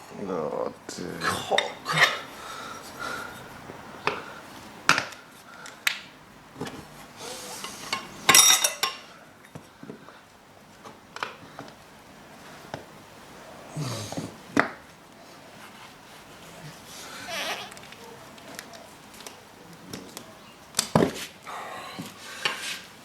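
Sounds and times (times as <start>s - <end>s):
metal tools clinking and scraping: 7.5s - 9.1s.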